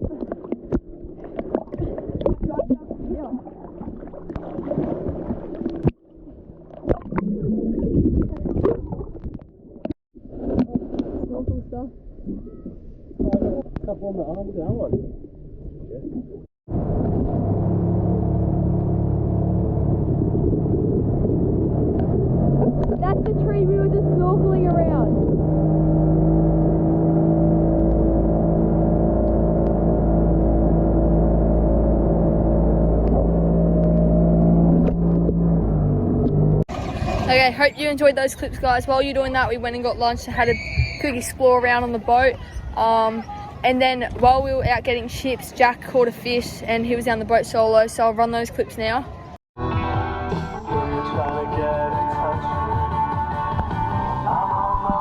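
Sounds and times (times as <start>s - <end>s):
muffled water gurgling and sloshing: 0.0s - 45.0s, 53.4s - 55.0s
boat motor droning: 16.7s - 39.8s.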